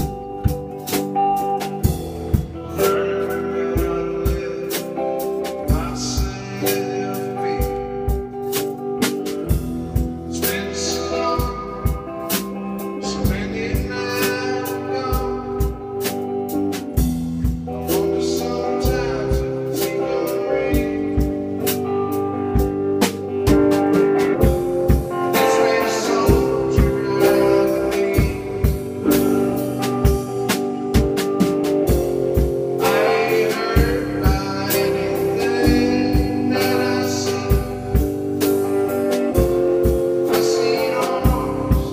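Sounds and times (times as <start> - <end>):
band playing a song: 0.0 - 41.9
drum kit steady beat: 0.0 - 41.9.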